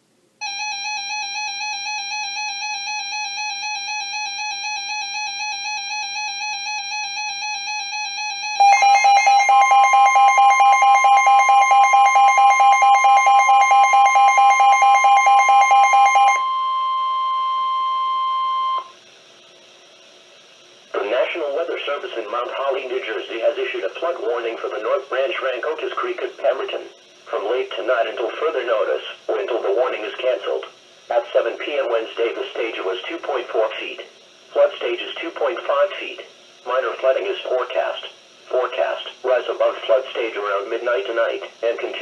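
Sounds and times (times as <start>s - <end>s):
electronic alarm warbling: 0.4s - 18.9s
steady alert tone: 8.4s - 17.2s.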